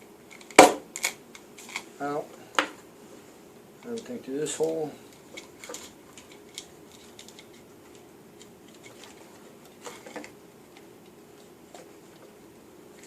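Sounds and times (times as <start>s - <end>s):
faint steady hum: 0.0s - 13.0s
small parts clicking and tapping: 3.8s - 11.9s.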